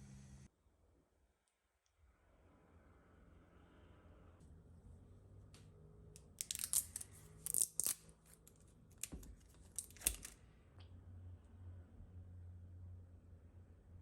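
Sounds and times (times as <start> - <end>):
crisp crackling and clicking: 6.2 - 10.4.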